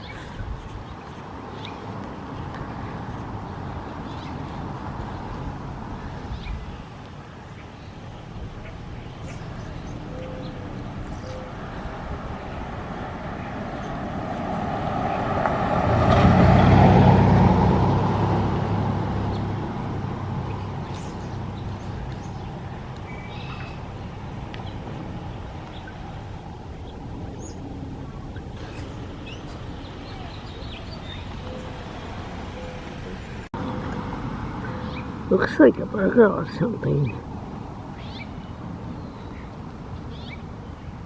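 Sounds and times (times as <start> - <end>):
road traffic noise: 0.0 - 41.0
faint bird calls: 5.9 - 12.7, 20.6 - 27.7, 28.4 - 33.3
vehicle driving past: 8.0 - 35.9.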